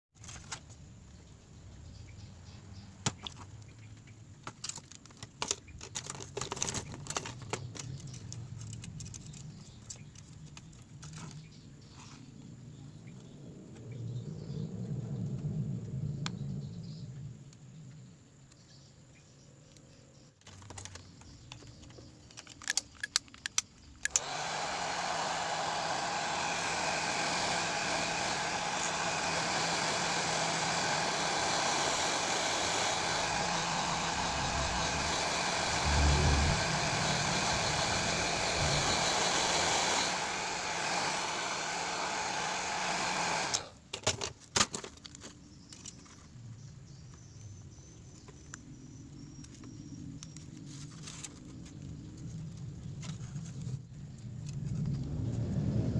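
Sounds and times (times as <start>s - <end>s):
hair dryer running: 24.1s - 43.7s.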